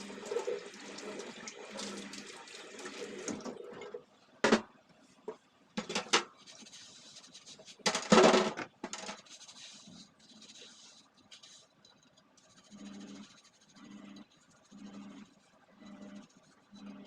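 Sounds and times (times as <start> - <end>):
kitchen items clattering: 5.8 - 6.4, 7.7 - 9.3.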